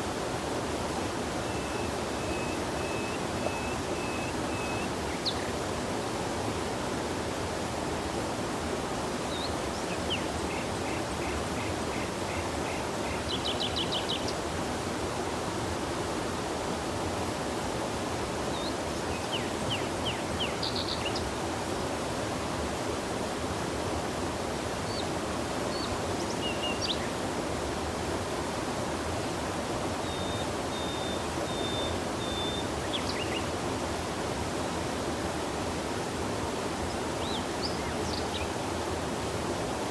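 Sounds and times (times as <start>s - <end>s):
river water rushing: 0.0s - 39.9s.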